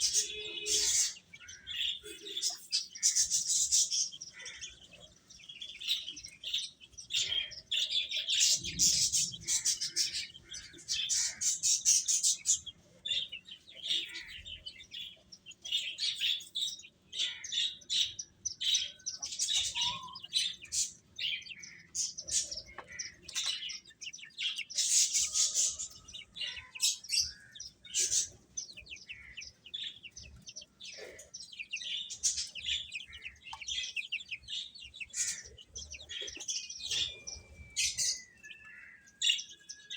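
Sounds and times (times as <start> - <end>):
chicks peeping: 0.0 - 39.9.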